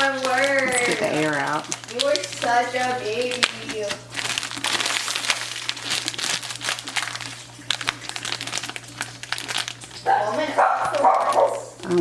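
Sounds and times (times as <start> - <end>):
plastic bag crinkling: 0.0 - 12.0.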